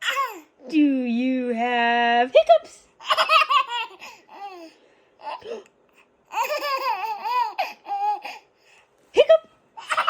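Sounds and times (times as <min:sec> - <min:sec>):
baby laughing and babbling: 0:00.0 - 0:00.6, 0:03.0 - 0:05.7, 0:06.3 - 0:08.5, 0:09.8 - 0:10.0.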